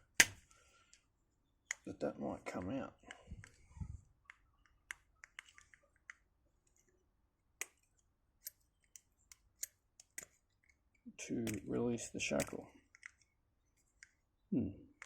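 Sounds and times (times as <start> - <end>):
padlock metallic clicks: 0.1 - 0.5, 7.6 - 13.4.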